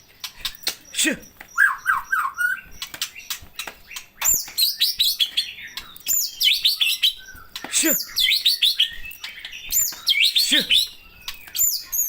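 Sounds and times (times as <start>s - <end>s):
songbird singing: 0.0s - 12.0s.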